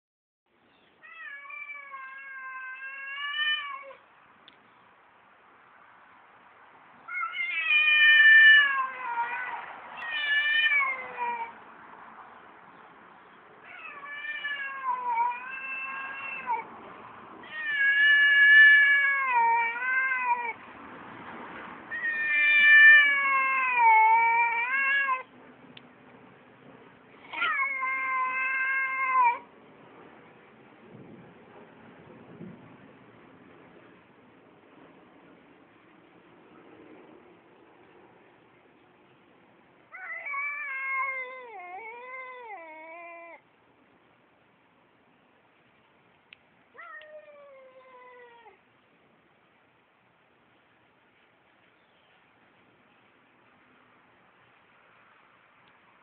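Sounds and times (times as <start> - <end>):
cat yowling: 1.0 - 4.0, 7.1 - 11.6, 13.6 - 16.7, 17.4 - 20.6, 21.9 - 25.3, 27.2 - 29.5, 39.9 - 43.4, 46.8 - 48.6.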